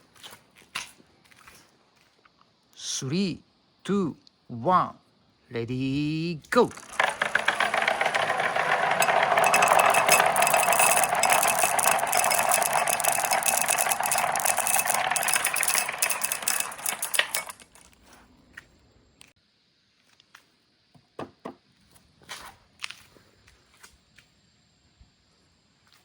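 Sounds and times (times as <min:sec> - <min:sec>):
marbles rattling down a track: 0:06.6 - 0:17.8.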